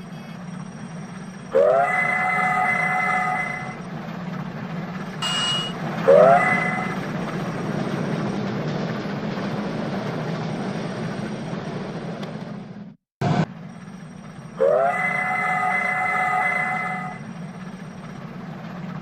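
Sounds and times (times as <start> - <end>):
low train rumble: 0.0 - 19.0
short high toot: 5.2 - 5.8.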